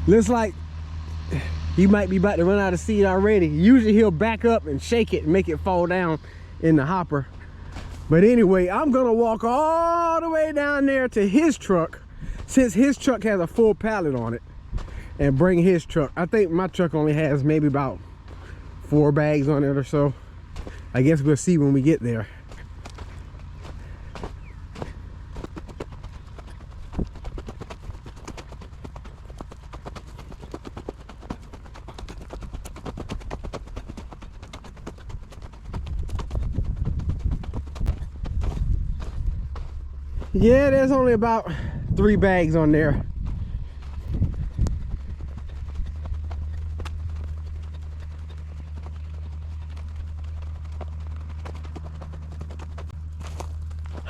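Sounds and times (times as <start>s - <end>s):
low rumble: 0.0s - 11.3s, 11.9s - 54.0s
footsteps on soil: 0.0s - 54.0s.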